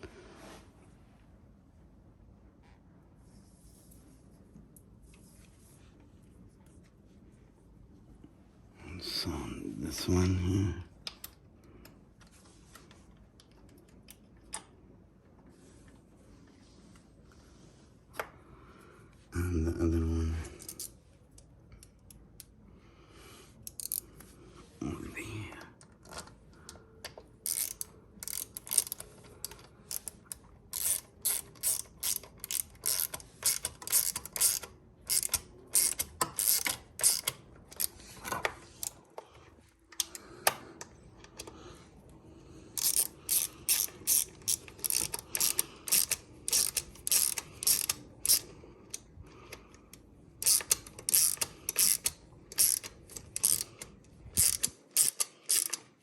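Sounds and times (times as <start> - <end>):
ratchet wrench clicking: 20.6 - 20.9, 23.6 - 24.0, 27.4 - 38.0, 42.8 - 49.0, 50.4 - 55.9.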